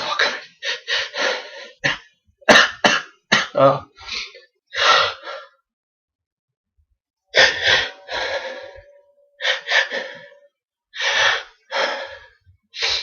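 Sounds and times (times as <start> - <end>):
man coughing: 1.9 - 3.8.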